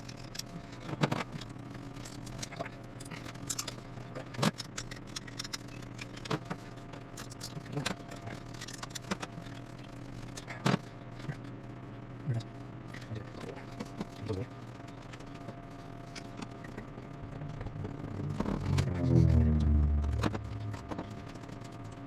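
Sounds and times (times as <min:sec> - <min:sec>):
low hum: 0:17.1 - 0:22.0.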